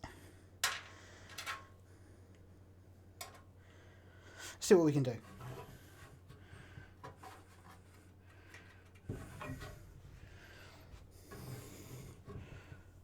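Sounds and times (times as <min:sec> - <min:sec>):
hands rubbing and scraping metal: 0:07.0 - 0:09.8.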